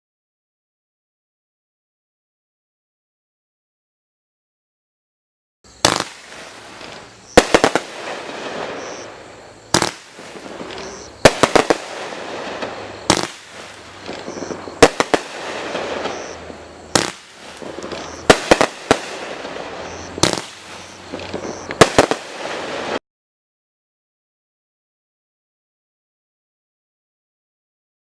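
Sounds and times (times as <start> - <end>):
firework bangs: 5.7 - 23.0
firework crackling and hiss: 5.7 - 23.0.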